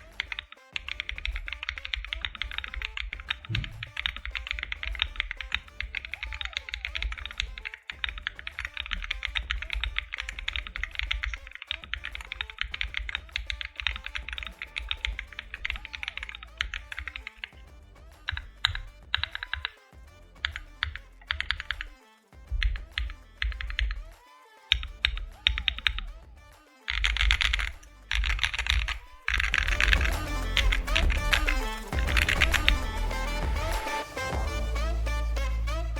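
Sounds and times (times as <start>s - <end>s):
background music: 0.0s - 35.9s.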